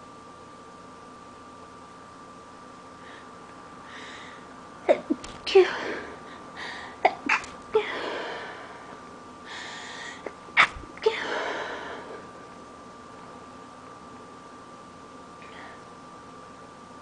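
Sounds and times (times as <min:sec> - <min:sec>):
person sneezing: 0:04.9 - 0:06.2, 0:10.6 - 0:12.0.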